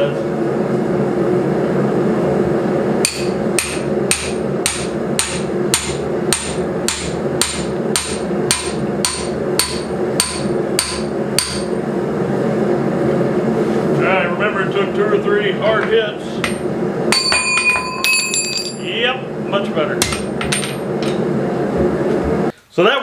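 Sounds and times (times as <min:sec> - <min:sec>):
steady drone: 0:00.0 - 0:22.5
hammer ringing on steel: 0:03.0 - 0:11.7, 0:16.4 - 0:18.8.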